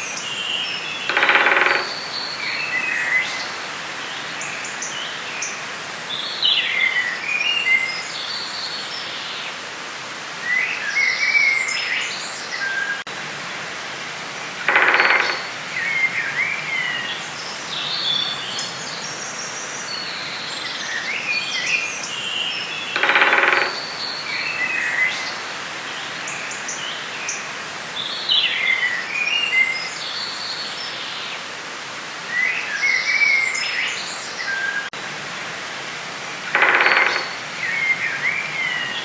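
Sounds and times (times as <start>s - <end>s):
birds singing and chirping: 0.0s - 8.5s, 14.6s - 25.4s, 36.5s - 39.0s
background hiss: 0.0s - 39.0s
harsh bird call: 14.7s - 16.1s, 22.9s - 25.0s, 36.5s - 39.0s.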